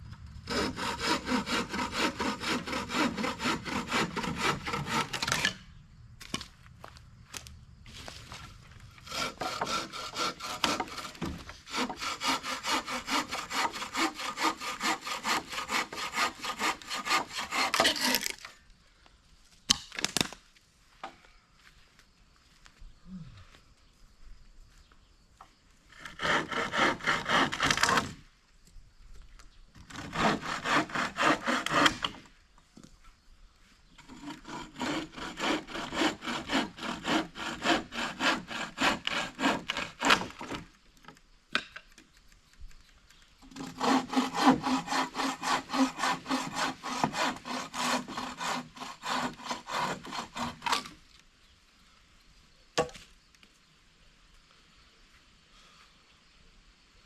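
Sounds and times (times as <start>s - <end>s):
hand saw cutting wood: 0.5s - 5.6s, 9.0s - 18.5s, 25.9s - 28.2s, 29.8s - 32.3s, 34.0s - 40.8s, 43.4s - 51.0s.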